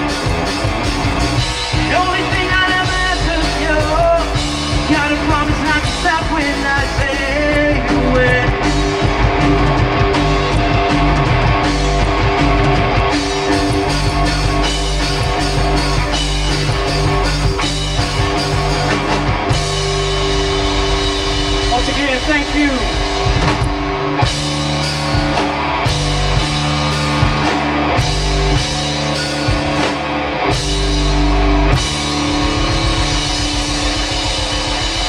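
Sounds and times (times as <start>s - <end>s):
drums: 0.0s - 35.0s
electric guitar: 0.0s - 35.0s
person singing: 1.8s - 8.8s.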